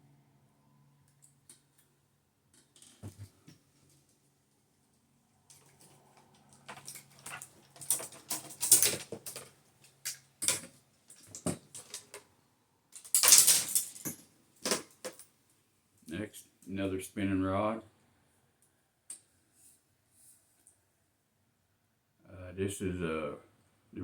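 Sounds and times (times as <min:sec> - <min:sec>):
fishing rods and reels handled: 0:05.5 - 0:12.2.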